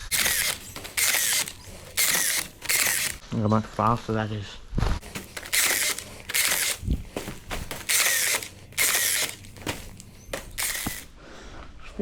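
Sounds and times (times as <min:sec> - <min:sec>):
rebar tying tool whirring: 0:00.0 - 0:03.2, 0:05.0 - 0:11.2.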